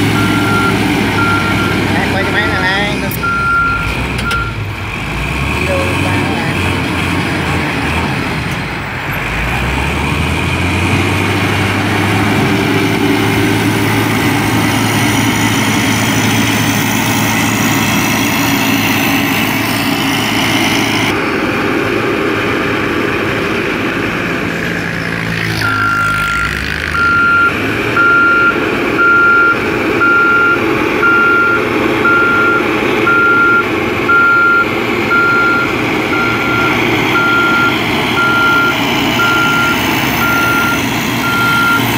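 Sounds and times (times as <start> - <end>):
reversing alarm beeping: 0.0 - 4.6, 25.6 - 41.9
heavy vehicle engine running: 0.0 - 41.9.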